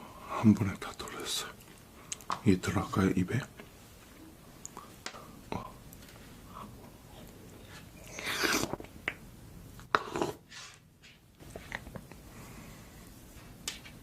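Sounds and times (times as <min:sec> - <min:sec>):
person chewing food: 0:11.4 - 0:12.2.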